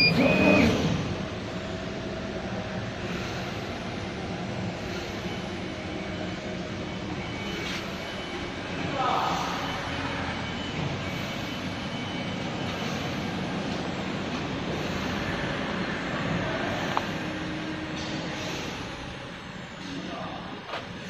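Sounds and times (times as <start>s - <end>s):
air rush and fan noise: 0.0s - 21.0s.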